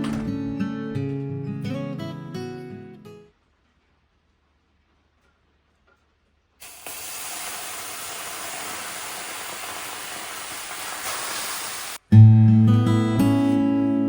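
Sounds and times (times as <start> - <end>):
acoustic guitar music: 0.0 - 3.3, 12.0 - 14.0
water hissing on hot stones: 6.6 - 12.0.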